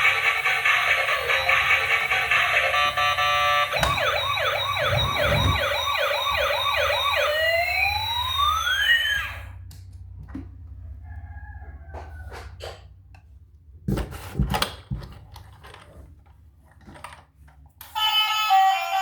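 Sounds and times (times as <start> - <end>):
music: 0.0 - 3.9
electronic siren yelping: 0.0 - 9.6.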